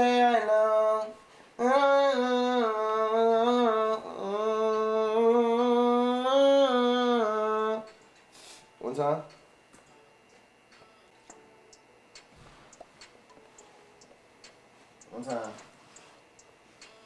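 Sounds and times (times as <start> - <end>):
man singing wordless melody: 0.0 - 8.0.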